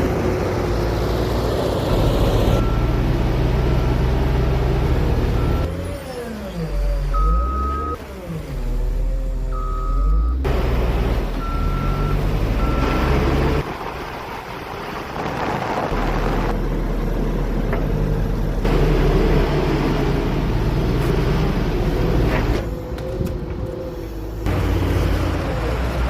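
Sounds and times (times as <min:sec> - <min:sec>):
diesel engine running: 0:00.0 - 0:26.0
reversing alarm beeping: 0:07.1 - 0:08.0, 0:09.5 - 0:10.4.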